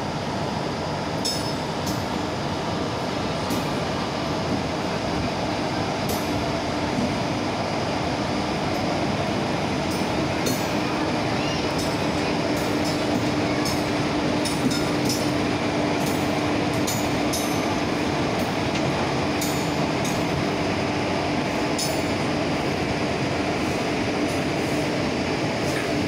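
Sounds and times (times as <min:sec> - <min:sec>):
train coaches rumbling past: 0:00.0 - 0:26.0.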